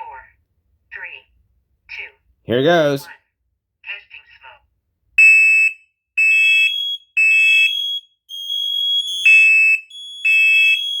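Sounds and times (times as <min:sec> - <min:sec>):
second higher alarm beeping: 0:05.2 - 0:11.0
smoke alarm beeping: 0:05.2 - 0:11.0.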